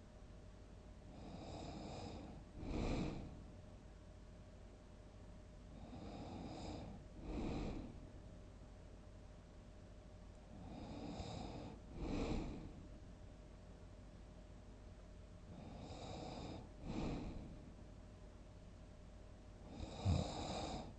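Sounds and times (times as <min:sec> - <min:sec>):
person snoring: 0:01.2 - 0:03.4, 0:05.8 - 0:08.0, 0:10.6 - 0:12.8, 0:15.6 - 0:17.6, 0:19.7 - 0:20.9.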